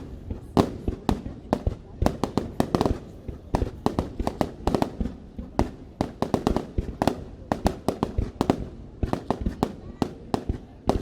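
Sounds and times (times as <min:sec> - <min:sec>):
fireworks banging: 0:00.0 - 0:11.0.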